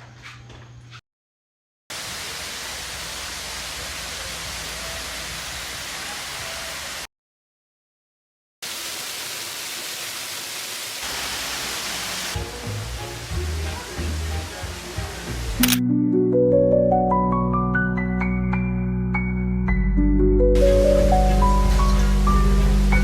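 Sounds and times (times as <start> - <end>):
water rushing: 1.9 - 7.1, 8.6 - 15.6, 20.6 - 23.0.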